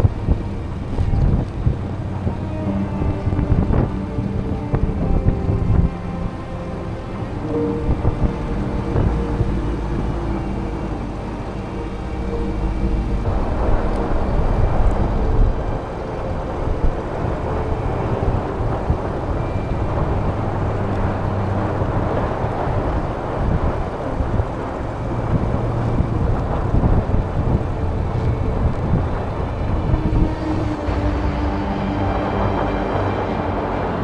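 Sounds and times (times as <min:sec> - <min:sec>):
tyres rumbling: 0:00.0 - 0:34.0.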